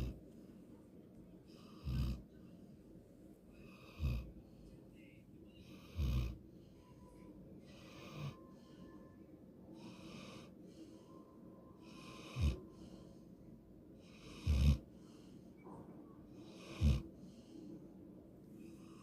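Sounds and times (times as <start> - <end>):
dog snoring: 0.0 - 0.2, 1.5 - 2.3, 3.6 - 4.4, 5.6 - 6.4, 7.6 - 9.0, 9.8 - 11.0, 11.8 - 13.0, 14.0 - 15.2, 16.4 - 17.5
dog snorting: 14.1 - 14.8, 16.5 - 17.0.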